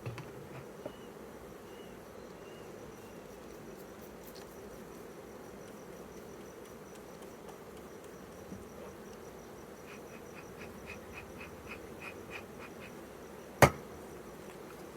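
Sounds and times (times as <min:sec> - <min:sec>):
honeybees buzzing: 0:00.0 - 0:14.9
sharp knock: 0:13.6 - 0:13.8.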